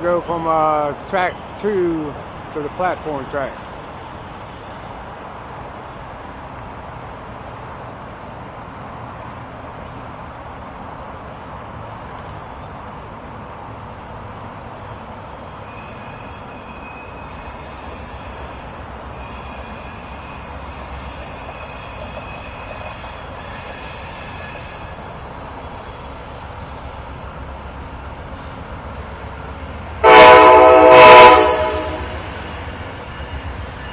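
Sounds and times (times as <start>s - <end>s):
train wheels rumbling on rail: 0.0s - 33.9s
high-pitched wheel squeal: 15.7s - 25.1s.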